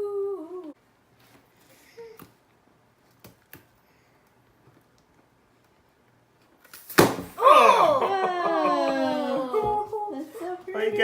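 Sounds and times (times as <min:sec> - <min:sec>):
balloon bursting with sharp pop: 0:06.8 - 0:07.4
children's voices exclaiming: 0:07.4 - 0:09.9.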